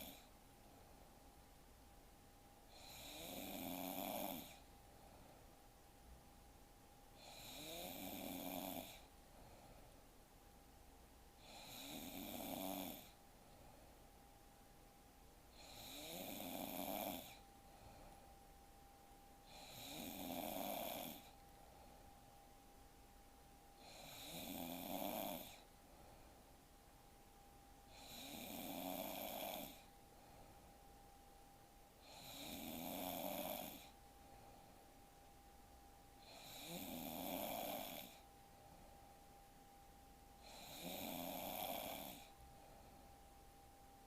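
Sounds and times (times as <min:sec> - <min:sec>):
woman snoring: 0:00.0 - 0:00.3, 0:02.7 - 0:04.7, 0:07.2 - 0:09.1, 0:11.4 - 0:13.2, 0:15.5 - 0:17.4, 0:19.4 - 0:21.4, 0:23.8 - 0:25.7, 0:27.9 - 0:29.9, 0:32.0 - 0:34.0, 0:36.2 - 0:38.2, 0:40.4 - 0:42.3.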